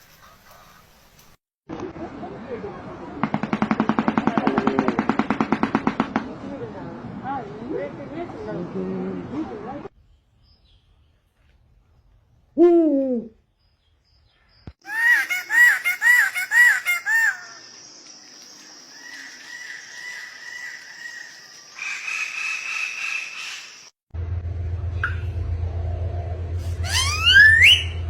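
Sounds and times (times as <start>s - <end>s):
birds calling: 14.6s - 23.9s.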